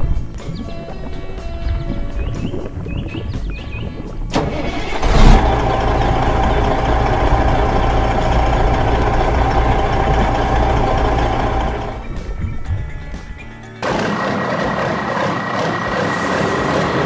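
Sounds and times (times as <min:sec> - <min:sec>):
engine burst: 0:04.3 - 0:12.1, 0:13.8 - 0:17.0
heavy vehicle engine running: 0:04.3 - 0:12.2, 0:13.8 - 0:17.0.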